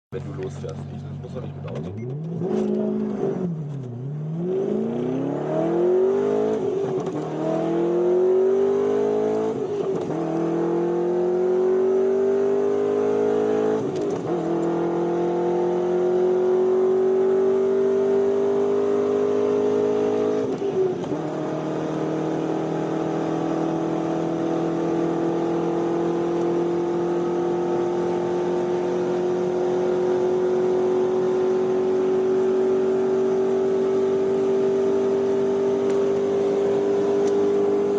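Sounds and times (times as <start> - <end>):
car engine at full throttle: 0.1 - 37.9.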